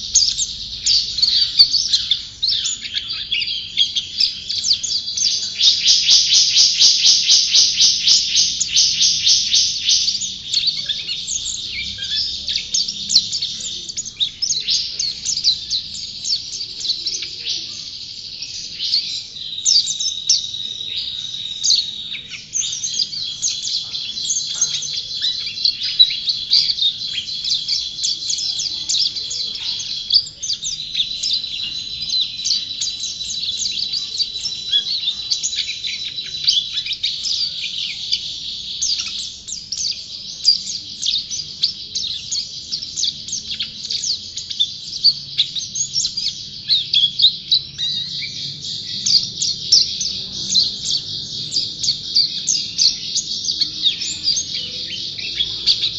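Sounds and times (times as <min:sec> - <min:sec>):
songbird singing: 0:00.0 - 0:55.9.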